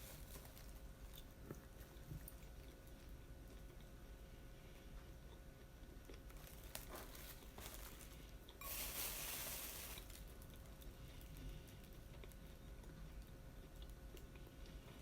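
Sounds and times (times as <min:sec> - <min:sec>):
loud crinkling rustle: 0:00.0 - 0:00.8, 0:06.3 - 0:10.5
quiet eating sounds: 0:00.0 - 0:15.0.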